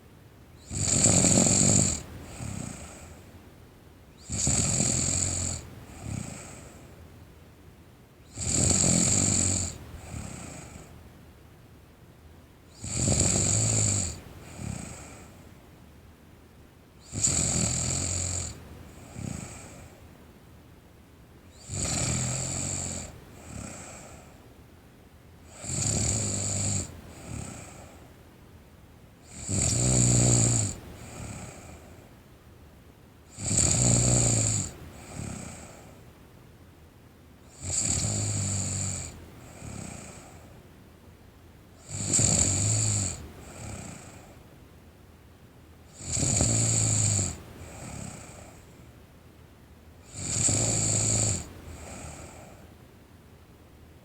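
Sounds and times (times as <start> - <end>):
girl snoring: 0.7 - 3.2, 4.3 - 6.8, 8.4 - 10.9, 12.8 - 15.2, 17.1 - 19.9, 21.6 - 24.2, 25.5 - 28.0, 29.3 - 31.8, 33.3 - 35.9, 37.5 - 40.4, 41.8 - 44.3, 45.9 - 48.6, 50.0 - 52.6
soft breath: 5.8 - 7.1, 23.3 - 24.5, 27.0 - 28.2, 47.4 - 49.0, 51.4 - 52.9.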